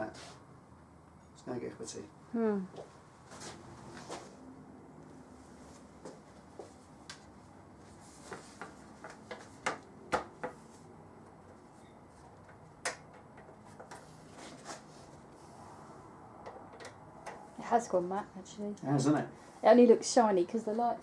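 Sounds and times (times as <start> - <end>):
light clicks and knocks: 16.4 - 17.4.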